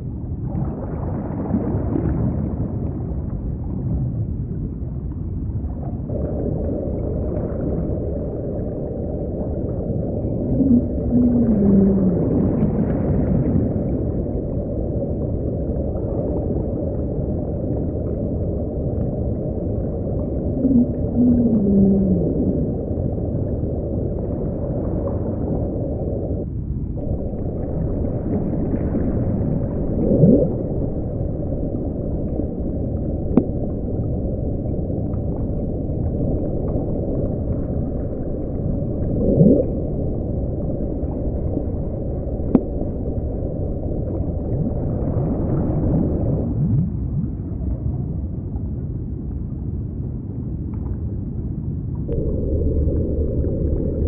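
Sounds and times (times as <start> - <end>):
low underwater rumble: 0.0 - 54.0
whale calls gliding upward: 10.3 - 12.8, 20.5 - 23.1, 29.9 - 30.8.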